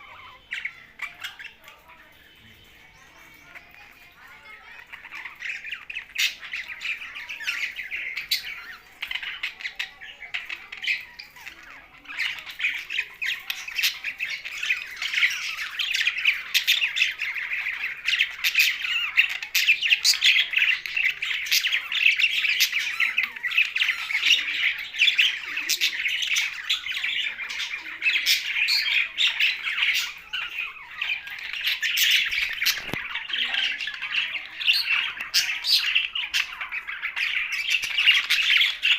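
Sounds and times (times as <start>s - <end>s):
parrots chattering and squawking: 0.0s - 38.9s.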